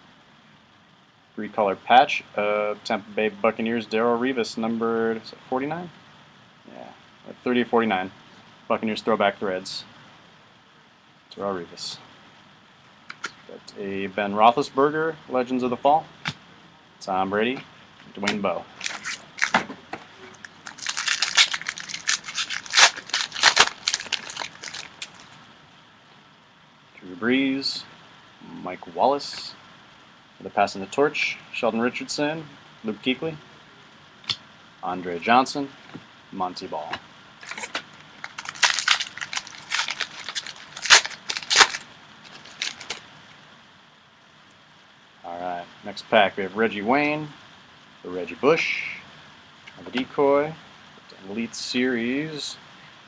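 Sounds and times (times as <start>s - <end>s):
wrapper being torn and crinkled: 18.8s - 19.6s, 20.3s - 25.4s, 37.4s - 43.0s.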